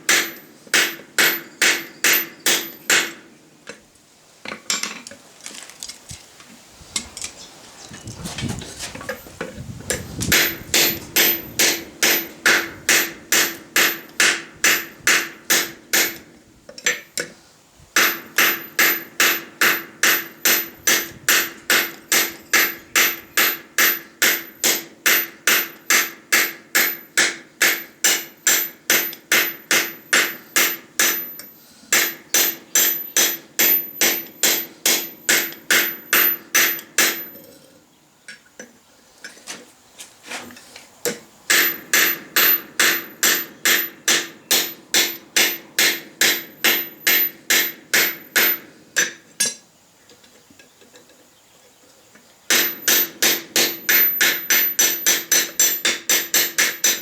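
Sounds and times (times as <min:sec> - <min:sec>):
hammer striking steel on anvil: 0:00.1 - 0:03.3, 0:10.3 - 0:16.2, 0:18.0 - 0:37.4, 0:41.5 - 0:49.6, 0:52.5 - 0:57.0.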